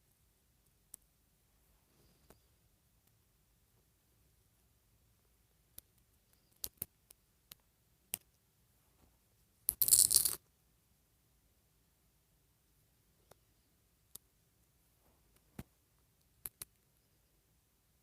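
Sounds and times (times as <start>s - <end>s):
plastic pieces clicking: 6.5s - 6.9s, 9.7s - 10.4s
plastic pieces clattering: 9.7s - 10.4s.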